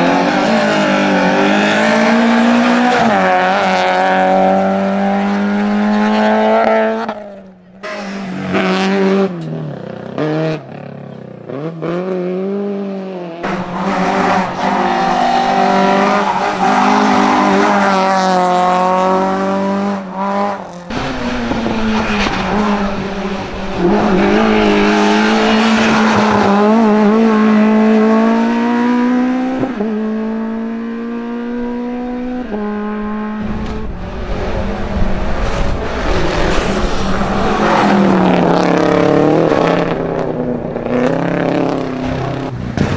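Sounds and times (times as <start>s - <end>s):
race car engines revving: 0.0s - 42.9s
tyre squeal: 13.4s - 18.2s.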